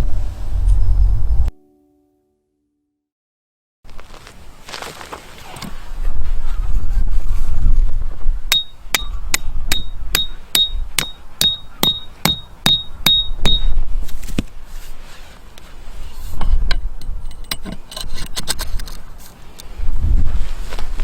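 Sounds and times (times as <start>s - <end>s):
hammer striking metal: 8.5s - 13.7s.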